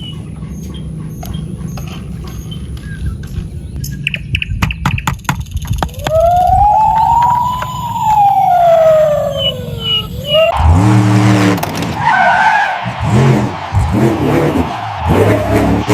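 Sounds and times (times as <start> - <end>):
siren wail: 5.9 - 15.9.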